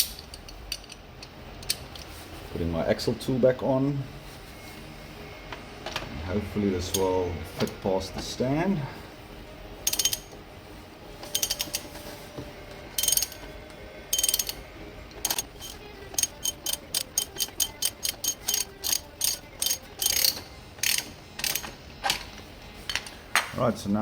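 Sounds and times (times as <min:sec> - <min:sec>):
ratchet wrench clicking: 0:09.8 - 0:10.4, 0:11.2 - 0:11.9, 0:13.0 - 0:13.4, 0:14.1 - 0:14.6, 0:15.2 - 0:22.2.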